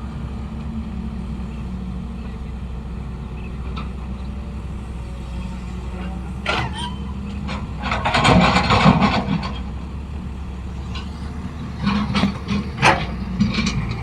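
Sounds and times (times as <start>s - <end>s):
rattling scraping noise: 6.4s - 9.7s, 10.9s - 14.0s.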